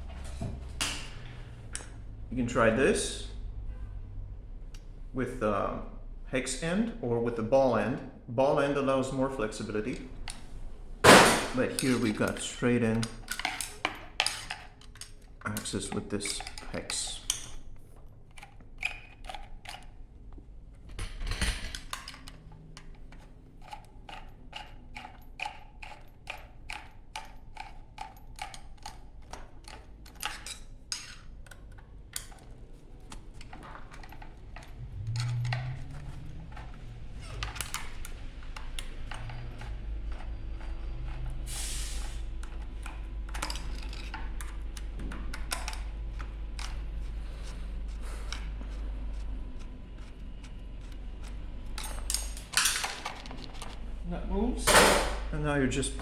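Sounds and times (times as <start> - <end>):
wrench clicking on metal: 21.9 - 32.4, 33.9 - 41.3
low steady rumble: 34.5 - 41.0.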